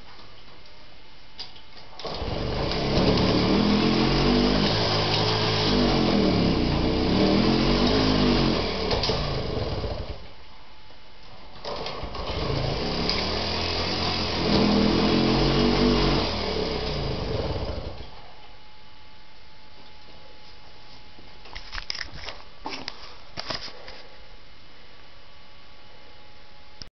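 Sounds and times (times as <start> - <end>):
moped engine revving: 2.1 - 10.3, 11.6 - 18.1.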